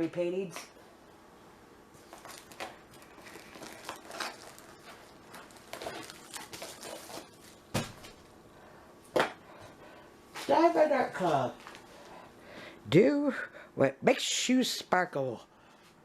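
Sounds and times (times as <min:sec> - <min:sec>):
packaging crinkling and rustling: 0:01.9 - 0:08.3.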